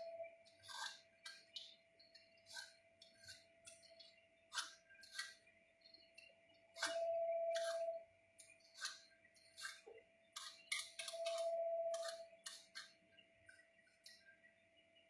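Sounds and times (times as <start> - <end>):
faint steady tone: 0.0 - 0.7, 5.4 - 10.1, 11.0 - 15.0.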